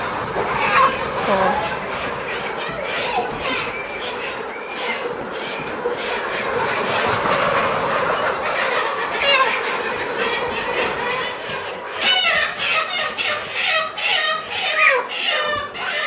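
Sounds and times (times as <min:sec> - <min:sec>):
loud chicken squawk: 0:00.0 - 0:05.0
chickens clucking and squawking: 0:00.0 - 0:16.0.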